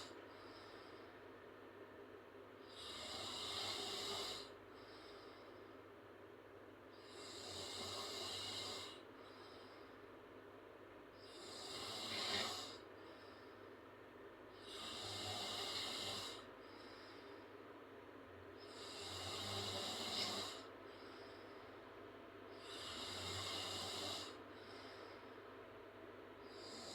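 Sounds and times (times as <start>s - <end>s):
quiet breathing: 0.0s - 26.9s
girl snoring: 2.7s - 4.5s, 7.1s - 9.0s, 11.3s - 12.8s, 14.7s - 16.4s, 18.6s - 20.7s, 22.6s - 24.4s.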